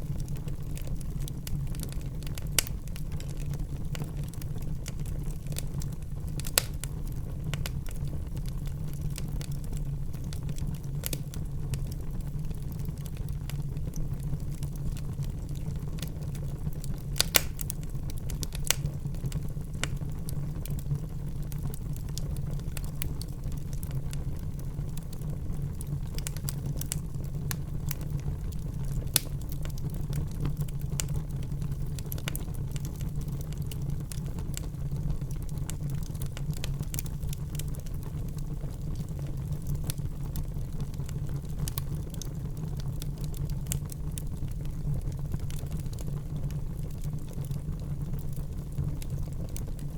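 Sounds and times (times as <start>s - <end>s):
fire crackles and pops: 0.0s - 49.9s
fire rumbling: 0.0s - 49.9s.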